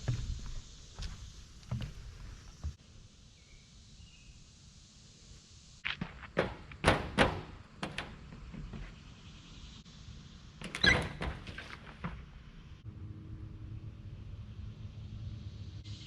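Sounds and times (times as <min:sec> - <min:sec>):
faint steady background noise: 0:00.0 - 0:16.0
knocks and thuds: 0:05.9 - 0:08.9.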